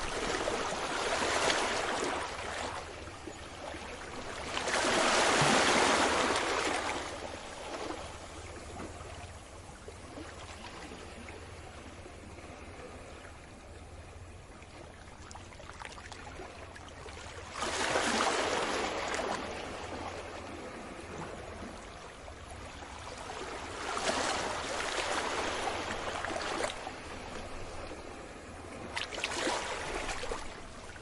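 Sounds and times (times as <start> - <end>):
sea waves washing in: 0.0 - 9.0, 17.4 - 31.0.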